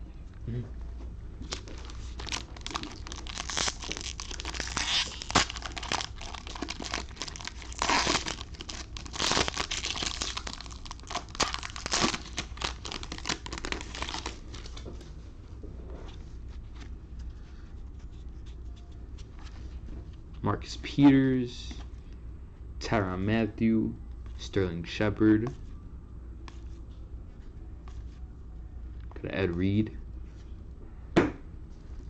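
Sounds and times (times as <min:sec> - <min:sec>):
foil wrapper crinkling and tearing: 0:01.5 - 0:14.7.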